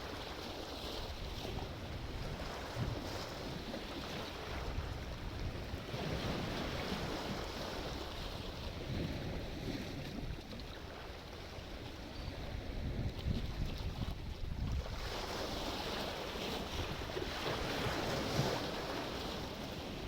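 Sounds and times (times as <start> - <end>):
wind rumble on microphone: 0.0 - 20.0
sea waves washing: 14.9 - 20.0.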